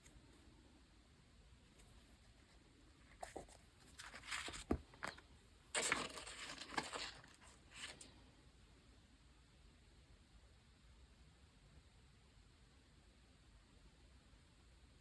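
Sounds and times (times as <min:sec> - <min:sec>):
paper rustling: 0:03.1 - 0:05.2, 0:05.8 - 0:08.0.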